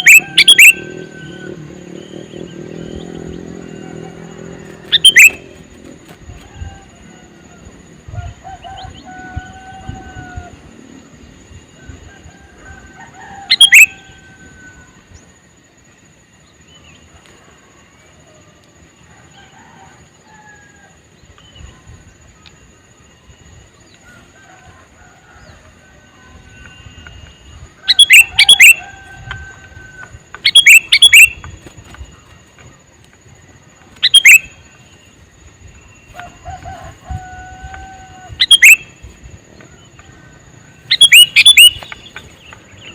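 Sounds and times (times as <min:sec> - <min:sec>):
bird chattering calls: 0:00.0 - 0:05.9, 0:13.5 - 0:14.0, 0:27.8 - 0:28.8, 0:30.4 - 0:31.7, 0:34.0 - 0:34.6, 0:38.4 - 0:39.0, 0:40.9 - 0:42.9.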